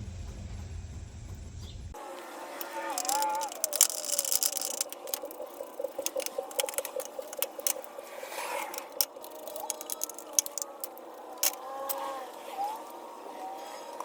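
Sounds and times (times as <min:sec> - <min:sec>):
ratchet wrench clicking: 0:02.6 - 0:08.0, 0:08.6 - 0:12.2.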